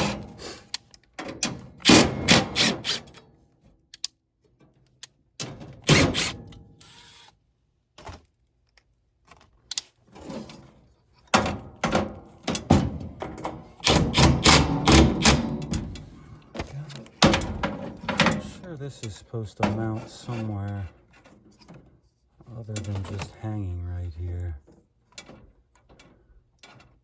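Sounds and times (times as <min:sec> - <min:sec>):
tools and metal parts clanking: 0:09.2 - 0:23.7, 0:24.3 - 0:27.0.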